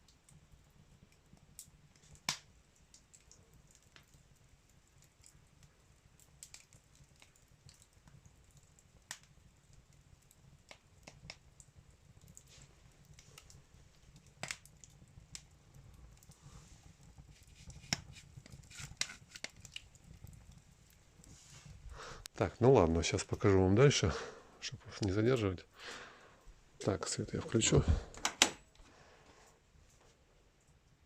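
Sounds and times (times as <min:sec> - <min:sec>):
fire pops and snaps: 0:00.0 - 0:28.9
wood fire crackling: 0:00.0 - 0:31.0.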